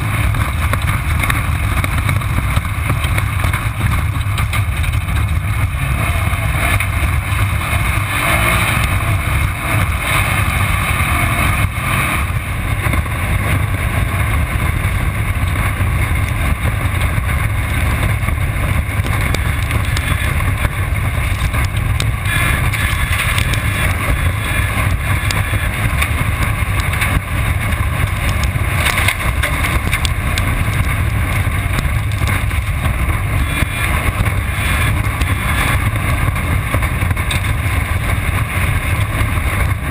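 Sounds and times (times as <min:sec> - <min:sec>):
race car engine and drivetrain noise: 0:00.0 - 0:39.9.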